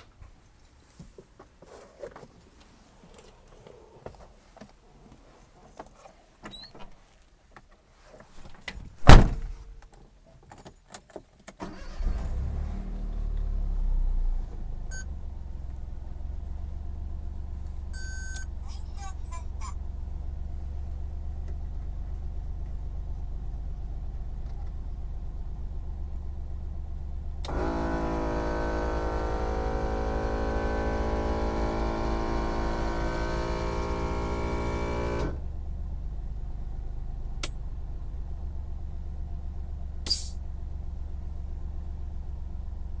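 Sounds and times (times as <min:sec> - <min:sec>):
short sharp hiss: 0:40.1 - 0:40.4.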